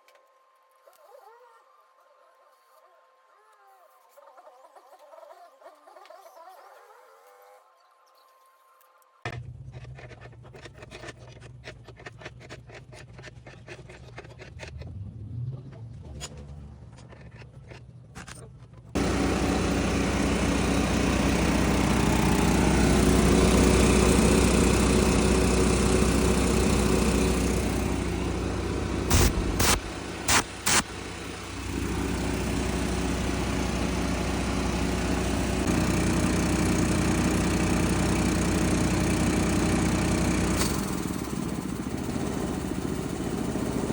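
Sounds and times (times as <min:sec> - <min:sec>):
sharp bursts of noise: 0:19.0 - 0:36.0
engine running loudly: 0:19.0 - 0:43.9.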